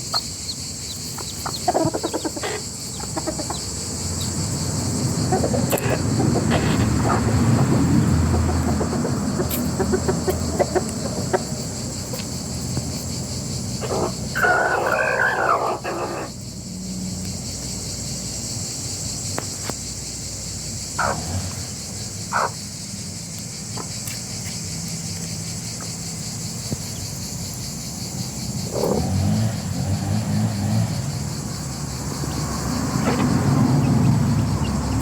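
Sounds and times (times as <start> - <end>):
chicken calls: 0.0 - 16.4, 20.9 - 21.5, 22.3 - 22.6, 32.0 - 35.0
insects chirring: 0.0 - 35.0
rooster crowing: 13.8 - 16.3.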